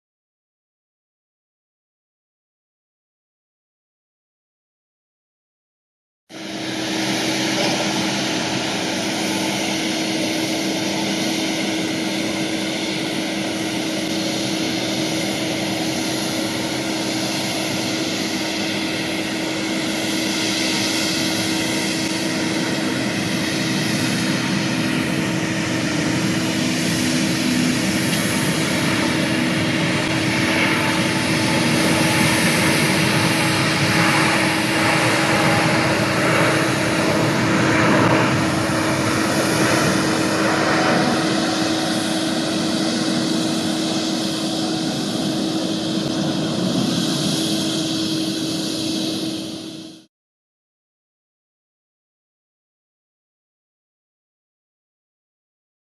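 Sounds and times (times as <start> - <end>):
constant engine hum: 6.3 - 50.1
jet engine roar: 6.3 - 50.1.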